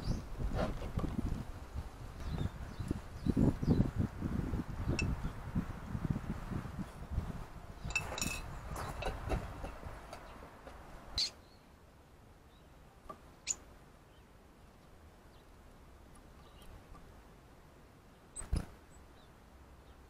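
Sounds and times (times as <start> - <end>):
birds chirping: 0.0 - 0.3, 2.2 - 4.0, 7.8 - 11.7, 15.2 - 17.0.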